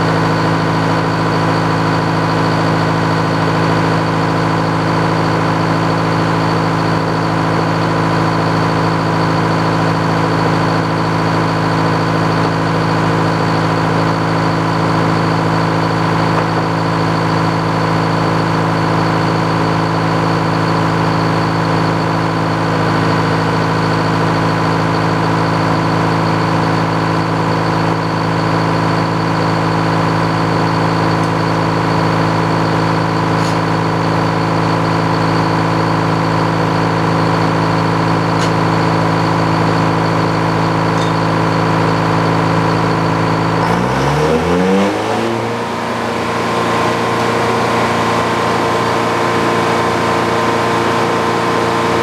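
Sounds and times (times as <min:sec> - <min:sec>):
engine running and revving: 0:41.7 - 0:52.0.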